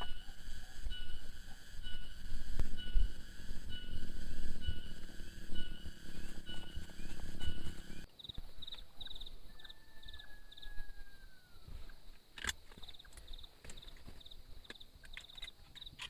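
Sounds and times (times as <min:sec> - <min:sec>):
falling whistle-like call: 0:00.0 - 0:08.1
low rumble: 0:00.0 - 0:08.1
repeated tones: 0:00.0 - 0:08.1
insects trilling: 0:00.0 - 0:16.0.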